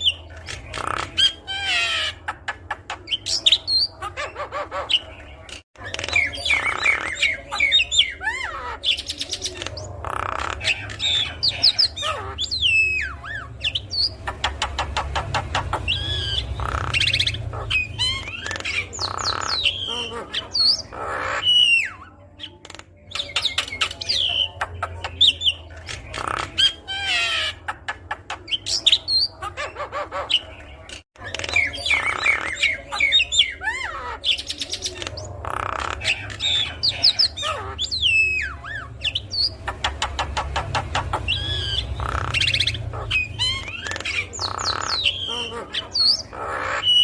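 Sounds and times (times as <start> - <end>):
bird harsh squawks: 5.8 - 22.2, 31.2 - 47.0.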